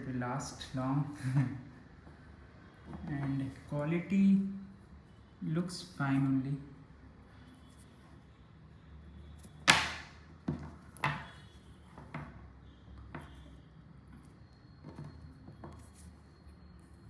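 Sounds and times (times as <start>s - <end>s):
sharp knock: 9.7s - 10.2s.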